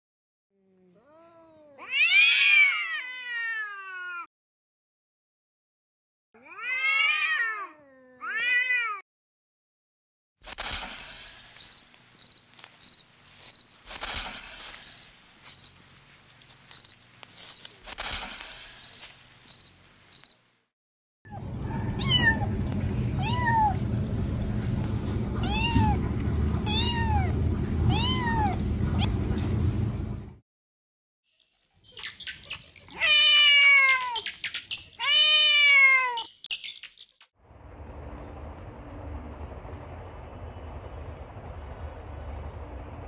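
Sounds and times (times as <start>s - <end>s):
low rumble: 21.3s - 30.4s, 37.4s - 43.0s
kittens meowing: 22.0s - 22.5s, 25.4s - 26.0s, 32.9s - 34.2s, 35.0s - 36.3s.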